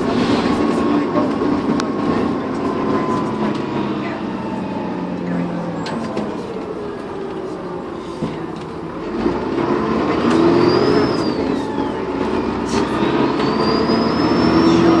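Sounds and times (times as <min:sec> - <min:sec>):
bus engine accelerating: 0:00.0 - 0:15.0
turbocharger whistle: 0:10.1 - 0:15.0.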